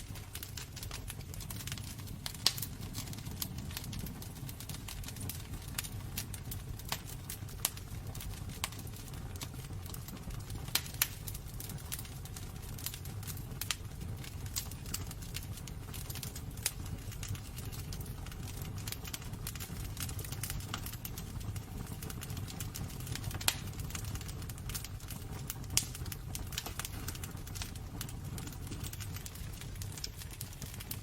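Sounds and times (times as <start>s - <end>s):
loud fire pops: 0.0s - 31.0s
low rumble of flames: 0.0s - 31.0s
wood fire crackling and snapping: 0.0s - 31.0s.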